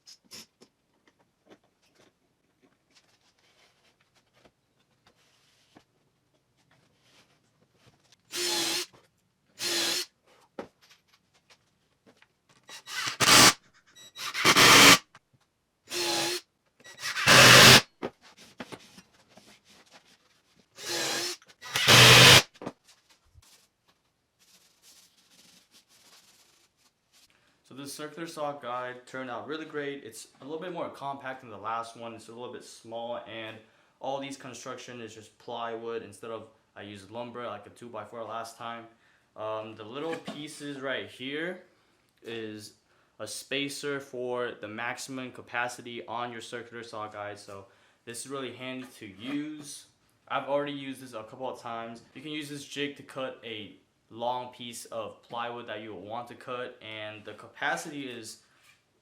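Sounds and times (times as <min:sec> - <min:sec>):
power tool bursts: 0:08.3 - 0:08.9, 0:09.6 - 0:10.1, 0:12.7 - 0:15.0, 0:15.9 - 0:17.8, 0:20.8 - 0:22.4.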